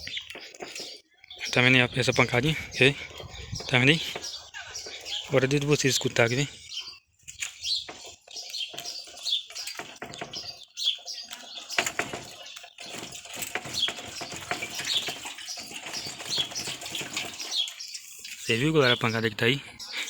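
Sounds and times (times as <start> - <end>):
birds chirping: 0.0 - 20.0
light irregular knocks: 7.3 - 17.9.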